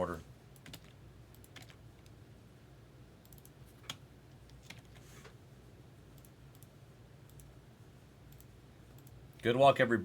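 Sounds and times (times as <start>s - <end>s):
computer keyboard typing clicks: 0.6s - 1.8s, 3.2s - 4.9s, 6.2s - 7.5s, 8.3s - 9.2s.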